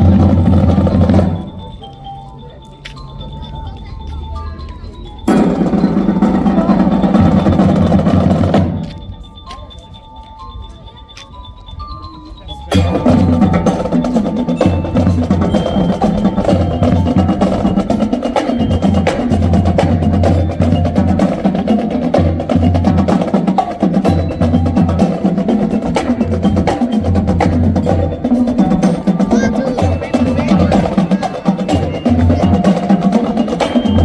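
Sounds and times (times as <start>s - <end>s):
marching band playing: 0.0s - 1.9s, 5.2s - 9.2s, 12.7s - 34.0s
bell-like mallet percussion: 0.0s - 34.0s
bass drum beat: 25.9s - 34.0s.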